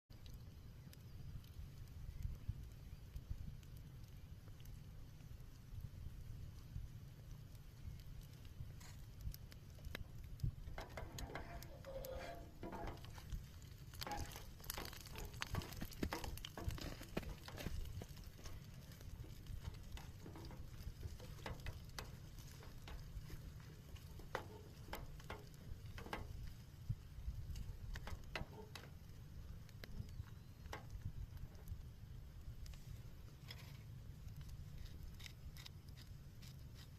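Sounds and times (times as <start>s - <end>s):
cooking clicks and taps: 6.7s - 31.8s
low rumble: 7.4s - 27.9s.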